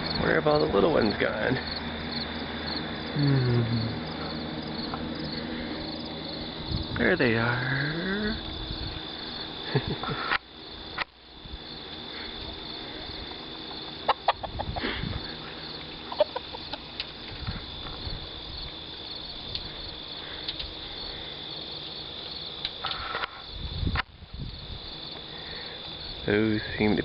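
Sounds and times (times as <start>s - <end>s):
crickets chirring: 0.0s - 27.0s
chickens clucking: 13.8s - 17.2s.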